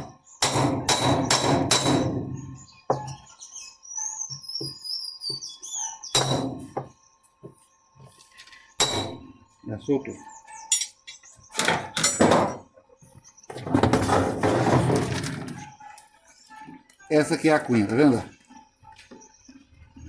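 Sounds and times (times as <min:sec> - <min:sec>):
hammer hitting metal: 0:00.4 - 0:02.4, 0:06.2 - 0:06.8, 0:08.8 - 0:09.3
faint bird chirps: 0:02.4 - 0:11.6.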